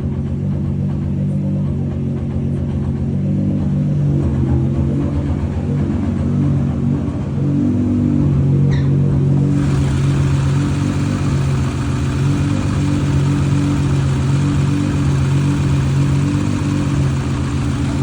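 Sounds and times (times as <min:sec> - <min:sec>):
car engine idling: 0:09.4 - 0:18.0
exhaust tapping: 0:09.5 - 0:18.0.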